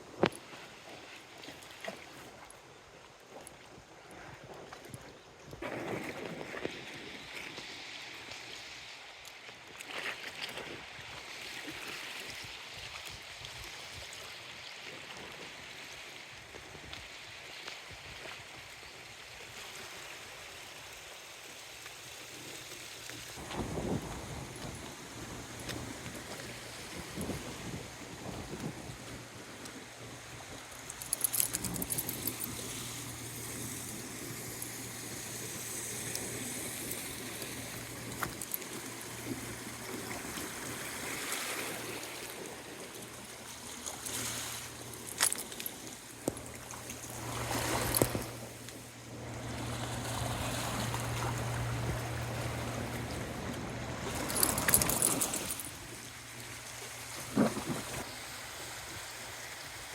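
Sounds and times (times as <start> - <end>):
wind buffeting microphone: 23.4 - 30.7
steady low hum: 43.2 - 58.0.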